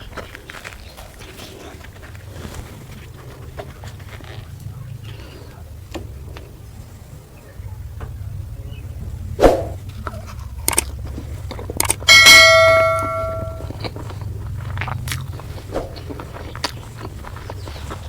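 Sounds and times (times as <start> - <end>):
low steady hum: 3.0 - 18.0
metal dish ringing: 12.1 - 13.7.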